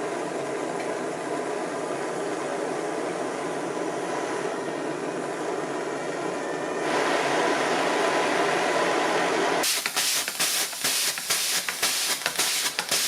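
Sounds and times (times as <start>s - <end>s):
gas torch flame hissing: 9.6s - 13.0s.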